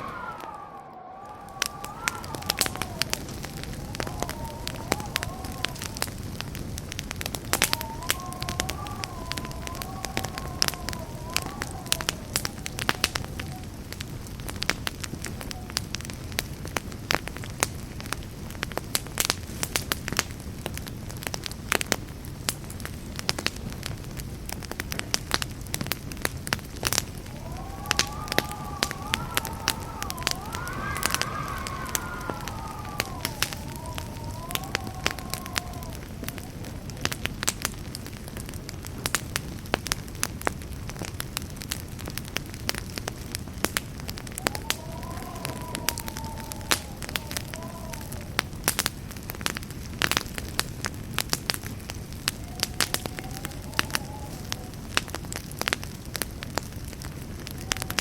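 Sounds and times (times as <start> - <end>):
wavering whistle-like tone: 0.0 - 5.8, 27.3 - 36.9
campfire crackling and popping: 0.0 - 58.0.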